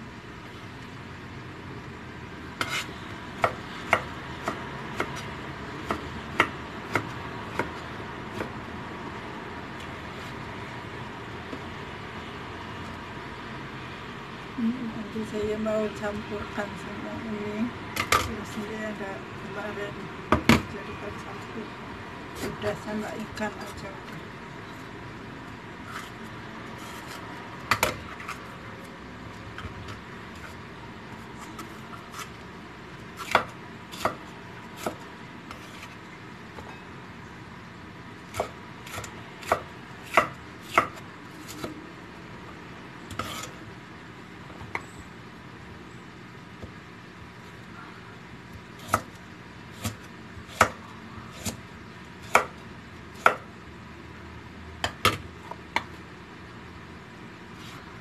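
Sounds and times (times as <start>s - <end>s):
knife chopping on cutting board: 5.8s - 7.8s, 33.2s - 34.2s, 34.8s - 35.9s, 38.3s - 41.7s, 48.8s - 49.1s, 49.8s - 51.6s, 52.2s - 52.5s, 53.2s - 53.4s.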